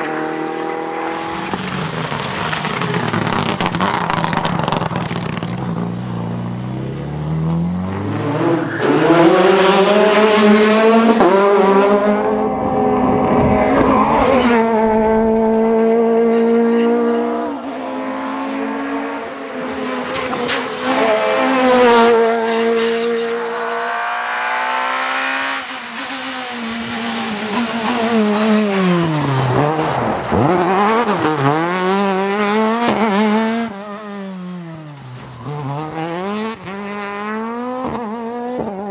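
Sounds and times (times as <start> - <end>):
cars passing at speed: 0.0 - 38.9
rally car engines revving: 0.0 - 38.9.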